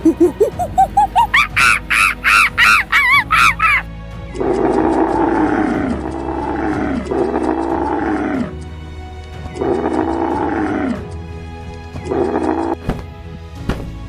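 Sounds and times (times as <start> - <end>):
background music: 0.0 - 14.0.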